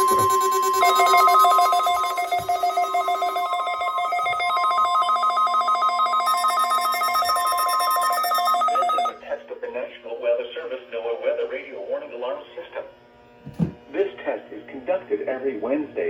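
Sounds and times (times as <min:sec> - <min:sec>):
pulsing two-tone electronic beep: 0:00.0 - 0:09.1
steady alarm tone: 0:00.0 - 0:09.2.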